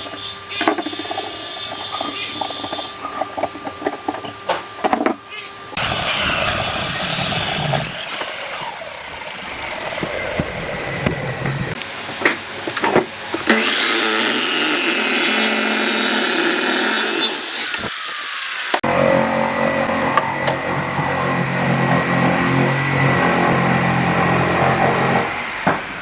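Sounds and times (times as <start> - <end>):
power tool running: 5.7 - 12.0, 12.6 - 25.7.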